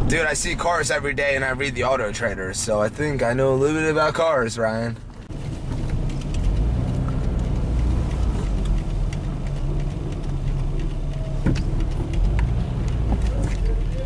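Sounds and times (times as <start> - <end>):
engine and road rumble: 4.9 - 14.0
faint clicks: 5.2 - 14.0.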